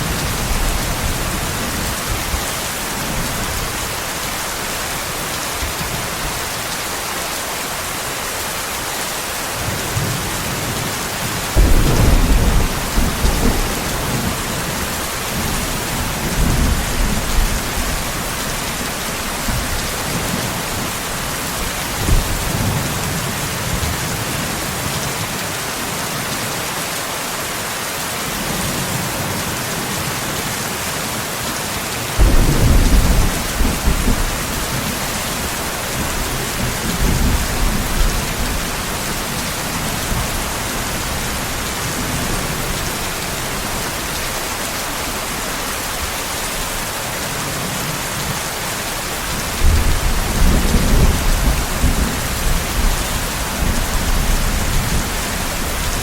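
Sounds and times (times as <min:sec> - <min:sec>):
heavy rain hissing: 0:00.0 - 0:56.0
thunder rumbling: 0:09.7 - 0:23.2, 0:32.2 - 0:44.2.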